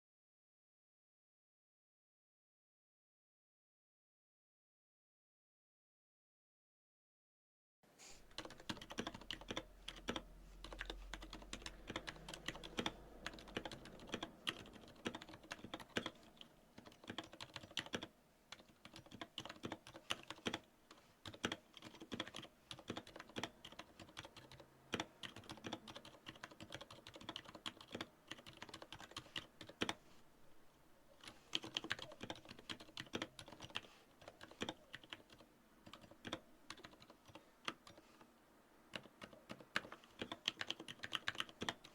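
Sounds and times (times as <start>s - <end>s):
soft keyboard typing: 8.2s - 30.1s, 31.1s - 41.9s.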